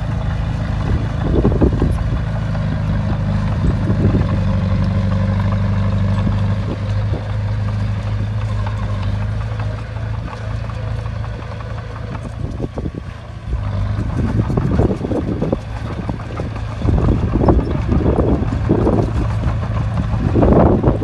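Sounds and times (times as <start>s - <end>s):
bulldozer engine humming: 0.0s - 21.0s
rough rushing noise: 11.6s - 21.0s.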